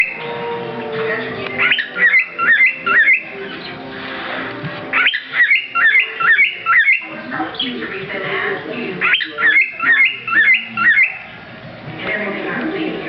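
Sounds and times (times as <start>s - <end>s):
cockatiel whistling: 1.6s - 3.8s, 4.9s - 7.7s, 9.0s - 11.3s.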